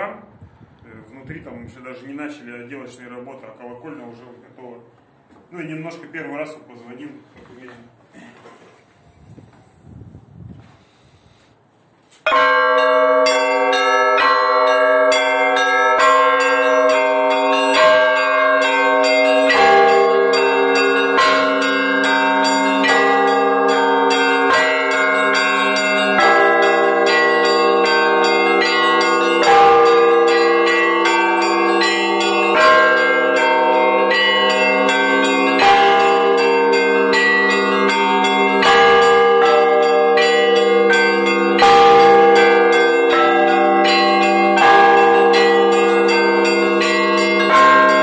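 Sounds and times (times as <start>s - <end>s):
small church bells chiming: 12.3s - 48.0s.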